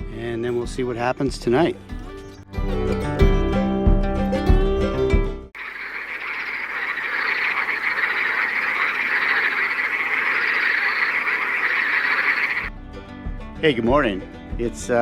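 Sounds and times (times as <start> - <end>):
chorus of frogs calling: 5.6 - 12.7.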